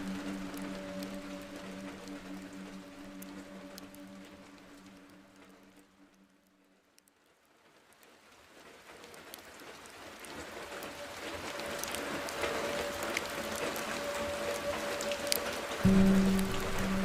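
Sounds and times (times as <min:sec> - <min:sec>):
wood fire crackling: 0:00.0 - 0:06.4, 0:07.9 - 0:17.0
faint steady tone: 0:00.0 - 0:06.5, 0:11.0 - 0:17.0.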